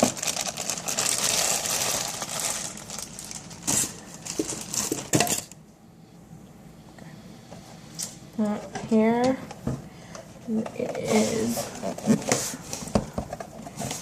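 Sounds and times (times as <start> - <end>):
packaging crinkling and rustling: 0.0 - 5.6.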